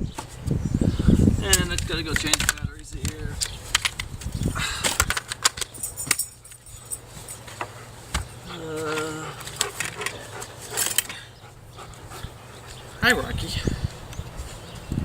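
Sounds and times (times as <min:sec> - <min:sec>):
tools clicking and clattering: 0:01.5 - 0:07.7, 0:08.9 - 0:11.2
dog whining: 0:08.4 - 0:12.7.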